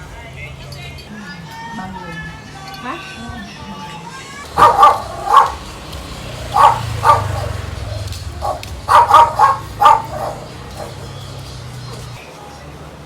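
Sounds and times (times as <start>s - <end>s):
dog barking: 4.5s - 11.4s.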